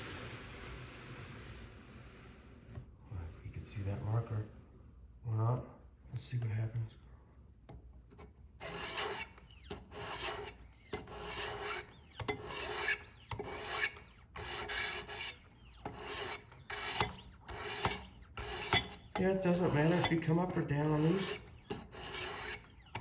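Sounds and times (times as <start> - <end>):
sharpening stones rasping on knife: 8.6 - 23.0.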